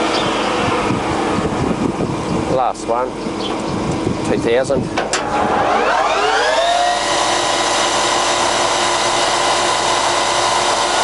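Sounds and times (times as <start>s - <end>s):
lathe gears whining: 5.0s - 11.0s.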